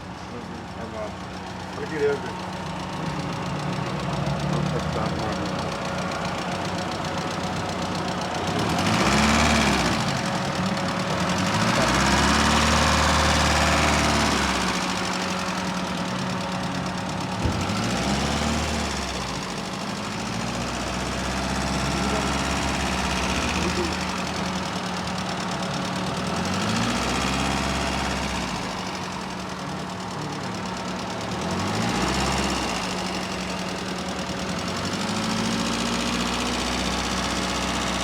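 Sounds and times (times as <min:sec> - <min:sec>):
engine idling and revving: 0:00.0 - 0:38.0.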